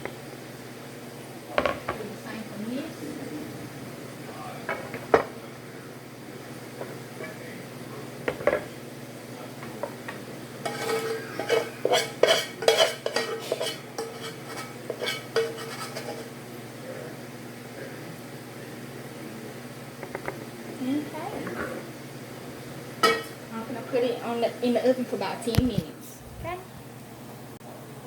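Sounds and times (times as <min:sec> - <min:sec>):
kitchen utensils clinking and scraping: 0:10.6 - 0:16.4, 0:23.0 - 0:23.4.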